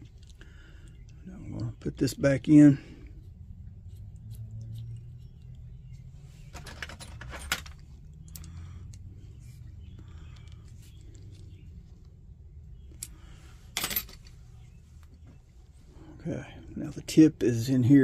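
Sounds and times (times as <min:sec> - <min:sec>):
small metal parts clicking: 0:06.5 - 0:09.0.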